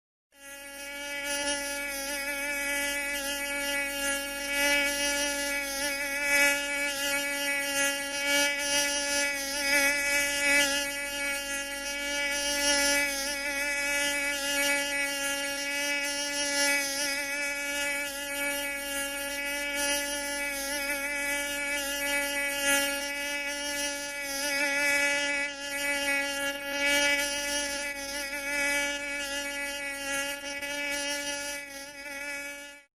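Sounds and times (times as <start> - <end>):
mosquito buzzing: 0.3 - 32.9.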